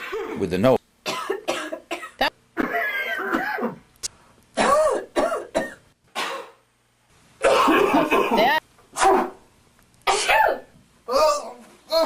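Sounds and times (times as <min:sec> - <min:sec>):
person coughing: 0:01.1 - 0:03.8, 0:04.6 - 0:06.6, 0:07.4 - 0:09.4, 0:10.1 - 0:10.7
person clearing throat: 0:01.1 - 0:03.9, 0:04.6 - 0:06.6, 0:07.4 - 0:08.4.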